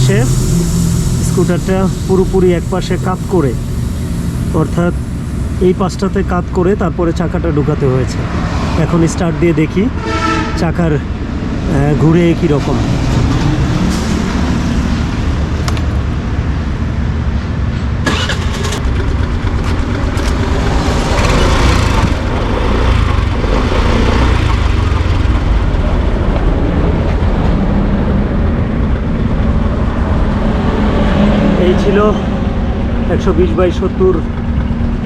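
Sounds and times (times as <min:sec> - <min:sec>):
scooter engine running: 0:18.1 - 0:26.2.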